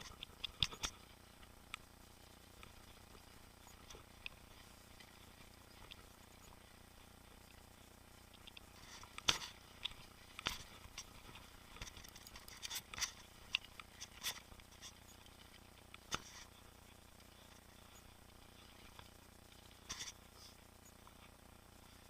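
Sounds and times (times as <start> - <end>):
bike knocking and rattling: 0.0 - 1.6, 8.3 - 16.6.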